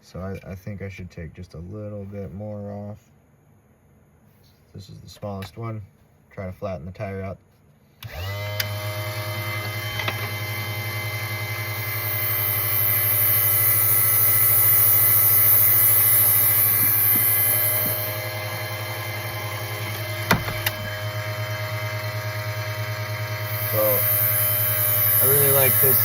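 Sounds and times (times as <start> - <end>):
cutting bit shaving foam hiss: 8.0 - 21.2, 23.4 - 26.0
motor spinning with steady hum: 8.0 - 26.0.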